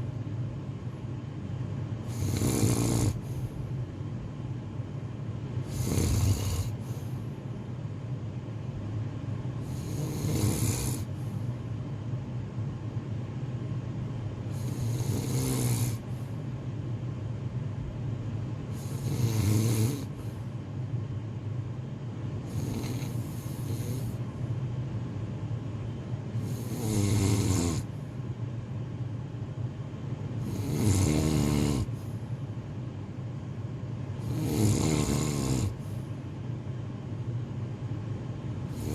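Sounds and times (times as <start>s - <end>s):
person snoring: 2.0s - 3.4s, 5.6s - 7.1s, 9.6s - 11.1s, 14.5s - 16.1s, 18.7s - 20.2s, 22.4s - 24.2s, 26.4s - 27.9s, 30.4s - 32.0s, 34.2s - 36.0s, 38.6s - 38.9s.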